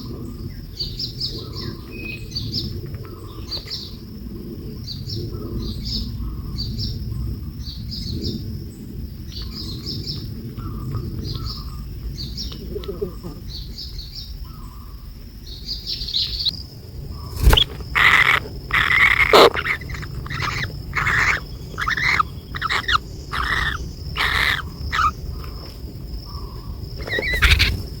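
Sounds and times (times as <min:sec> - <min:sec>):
nestling bird begging chirps: 0:17.2 - 0:25.2, 0:26.3 - 0:28.0.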